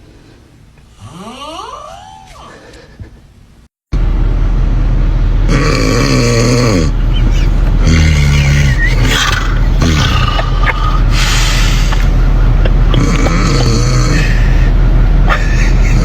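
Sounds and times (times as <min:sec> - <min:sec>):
constant low rumble: 0:00.0 - 0:16.0
person snoring loudly: 0:01.0 - 0:02.2, 0:05.5 - 0:12.0, 0:12.9 - 0:14.6.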